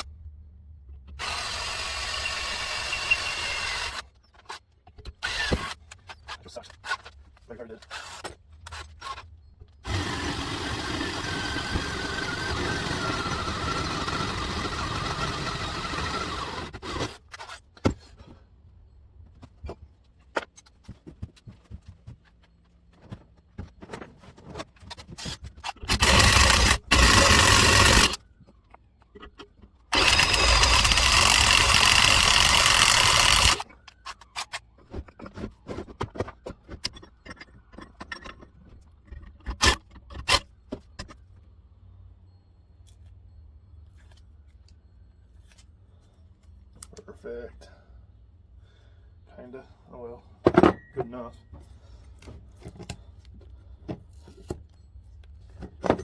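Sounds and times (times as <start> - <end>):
power drill boring through metal: 1.2 - 4.0, 5.2 - 5.8, 9.8 - 17.1, 25.8 - 28.2, 29.9 - 33.6.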